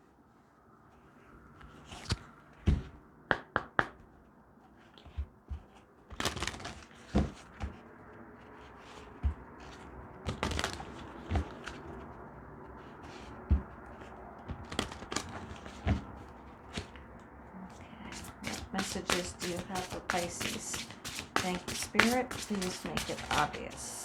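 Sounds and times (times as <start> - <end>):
cards shuffling: 6.1 - 7.7, 8.9 - 12.2, 12.8 - 24.0
cards tapping together: 6.1 - 7.7, 10.3 - 11.9, 13.6 - 16.0, 17.7 - 24.0.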